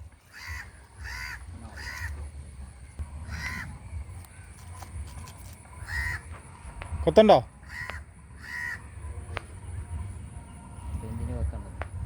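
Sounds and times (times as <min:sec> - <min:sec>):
crow cawing: 0:00.2 - 0:02.3, 0:03.2 - 0:04.5, 0:05.8 - 0:06.3, 0:07.6 - 0:09.0.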